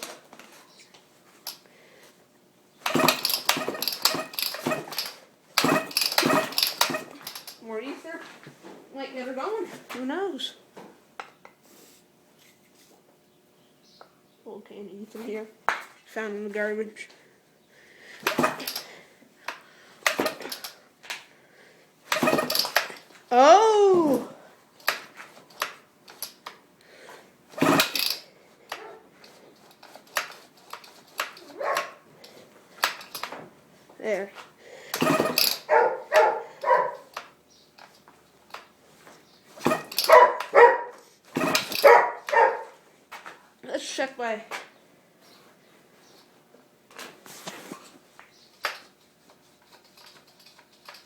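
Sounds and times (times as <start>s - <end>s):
chainsaw recoil starter whirring: 2.8s - 7.7s, 18.2s - 20.8s, 22.1s - 33.4s, 34.8s - 38.7s, 39.5s - 40.7s, 41.3s - 42.6s
dog barking: 28.8s - 29.1s, 31.5s - 32.0s, 35.6s - 37.1s, 40.0s - 41.0s, 41.8s - 42.8s.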